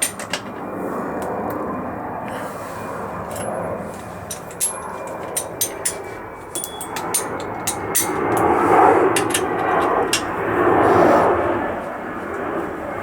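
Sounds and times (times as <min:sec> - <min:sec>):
hand tools clicking on metal: 0:00.0 - 0:00.6, 0:03.3 - 0:10.4.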